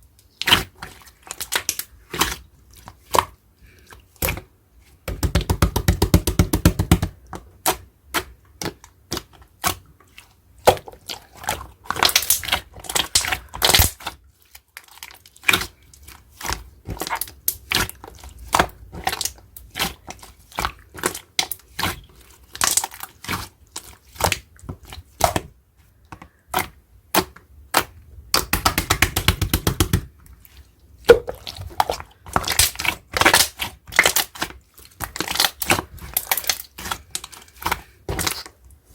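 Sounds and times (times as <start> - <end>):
slime squishing and popping: 10.6 - 14.1, 26.5 - 30.1, 31.0 - 38.5.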